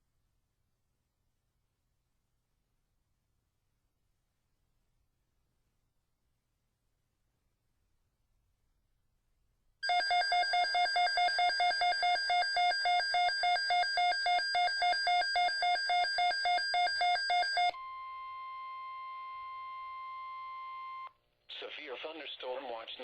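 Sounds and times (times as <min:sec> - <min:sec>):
steady warning alarm tone: 0:09.8 - 0:21.1
weather radio alarm beeping: 0:09.8 - 0:21.1.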